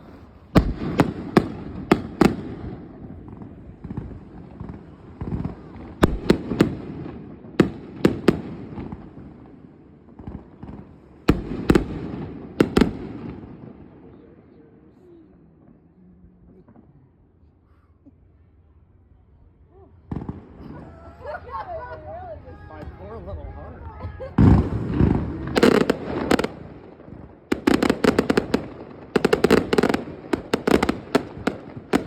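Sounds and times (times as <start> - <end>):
fireworks bangs: 0.0 - 14.4, 20.0 - 21.8, 24.1 - 32.0.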